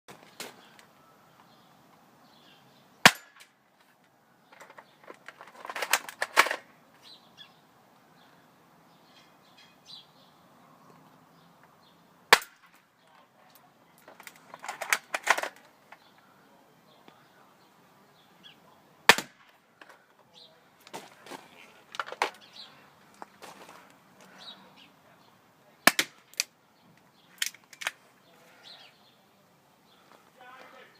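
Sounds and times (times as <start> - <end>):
bb gun firing crack: 3.0 - 3.5, 12.3 - 12.8, 19.1 - 19.6, 25.9 - 26.4.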